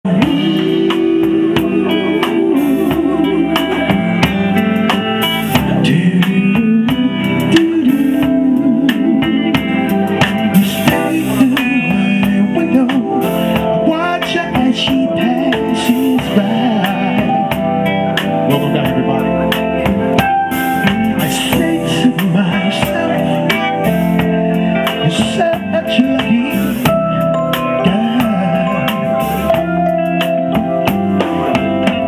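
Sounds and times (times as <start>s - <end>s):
soul band playing: 0.0s - 32.0s
drum kit hits: 26.2s - 32.0s.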